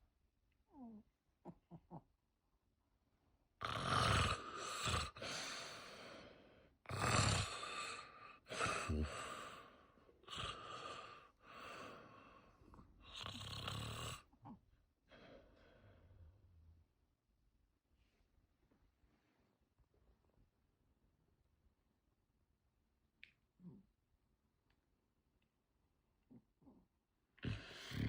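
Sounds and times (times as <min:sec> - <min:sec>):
man snoring: 0:03.6 - 0:05.8, 0:06.9 - 0:11.9, 0:13.0 - 0:14.3, 0:27.4 - 0:28.0.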